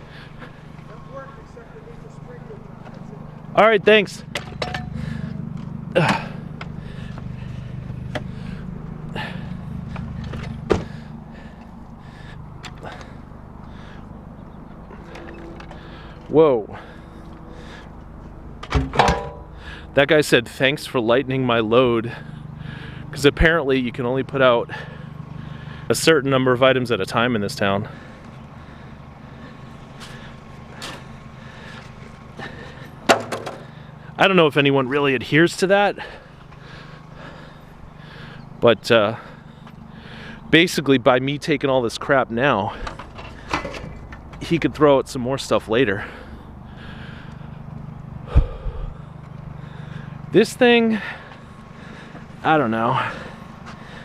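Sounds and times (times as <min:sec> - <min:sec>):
vehicle engine idling: 0:00.0 - 0:54.0
sharp knocks: 0:18.6 - 0:19.5, 0:33.1 - 0:33.6
sharp clatter of knocks: 0:33.1 - 0:33.7.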